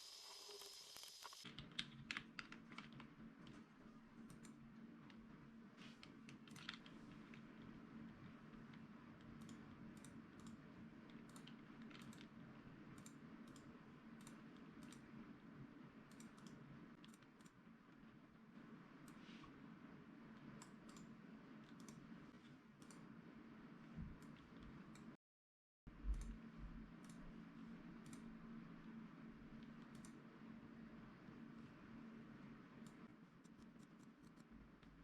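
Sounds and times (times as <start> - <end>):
keyboard and mouse clicks: 9.2 - 15.1, 16.1 - 17.6, 20.4 - 22.0, 22.8 - 23.1
steady low hum: 25.9 - 35.0.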